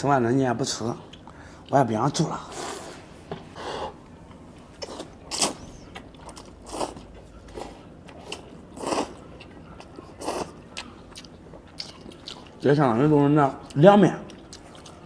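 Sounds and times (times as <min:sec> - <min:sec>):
person slurping noodles: 0:07.6 - 0:09.2.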